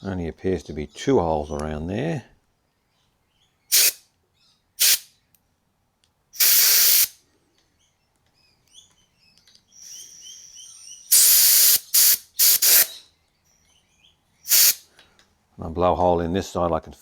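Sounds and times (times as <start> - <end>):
compressed air blasts hissing: 3.7 - 4.0, 4.8 - 5.1, 6.4 - 7.2, 11.1 - 13.0, 14.5 - 14.9
faint high chirps: 7.7 - 14.6.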